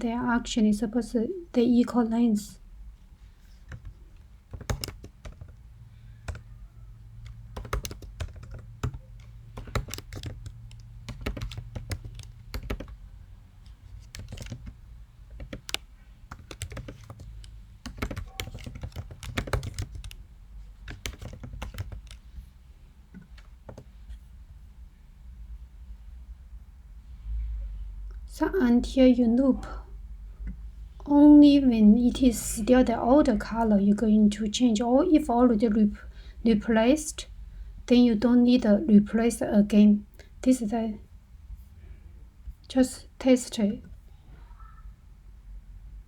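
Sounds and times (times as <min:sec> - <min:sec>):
low steady hum: 0:00.0 - 0:46.0
keyboard key clicks: 0:03.7 - 0:05.6, 0:07.2 - 0:13.0, 0:13.9 - 0:20.2, 0:20.9 - 0:22.5.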